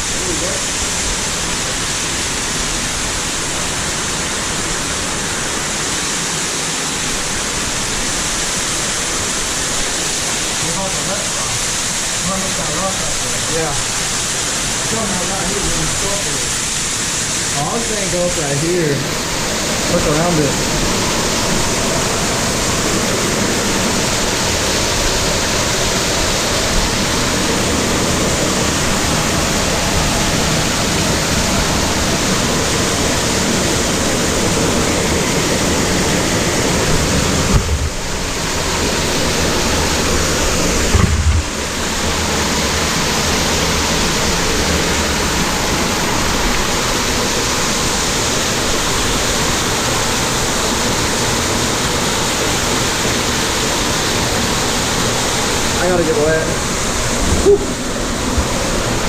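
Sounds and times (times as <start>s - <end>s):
waterfall rushing: 0.0s - 59.0s
low thumps: 36.8s - 42.1s.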